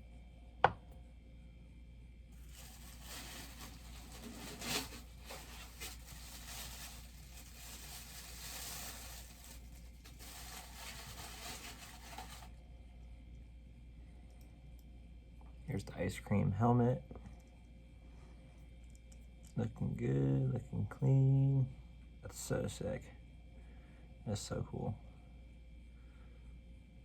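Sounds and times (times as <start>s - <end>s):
packaging rustling and tearing: 2.4s - 12.5s.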